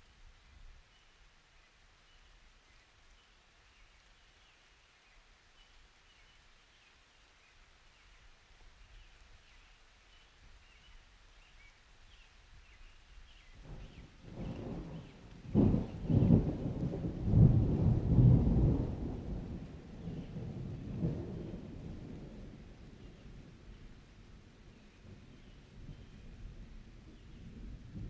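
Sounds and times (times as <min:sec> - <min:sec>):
low rumble of thunder: 0:13.4 - 0:28.0.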